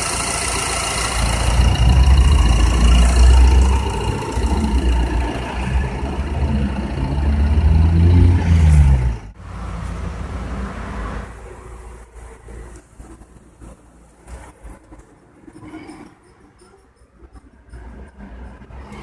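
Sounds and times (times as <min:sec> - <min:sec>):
car engine revving: 0:00.0 - 0:12.6.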